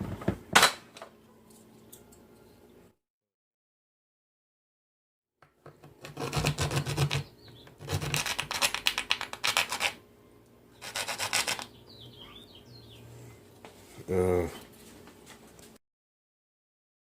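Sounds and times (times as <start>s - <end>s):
serrated knife sawing plastic: 6.0s - 10.0s, 10.8s - 11.7s.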